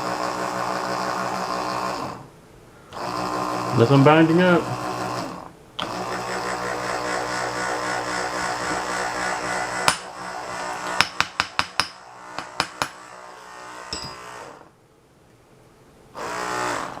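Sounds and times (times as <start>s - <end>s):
electric motor humming: 2.9s - 11.2s, 16.2s - 17.0s.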